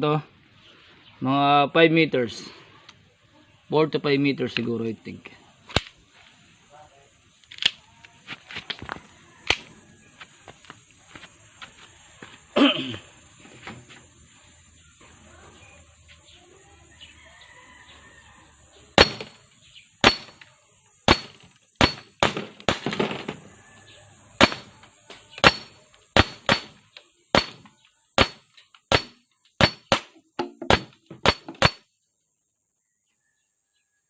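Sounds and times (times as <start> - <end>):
airsoft pistol shots: 19.0 - 19.4, 20.0 - 20.4, 21.1 - 23.0, 24.4 - 24.8, 25.4 - 26.8, 27.4 - 30.1, 30.7 - 31.8.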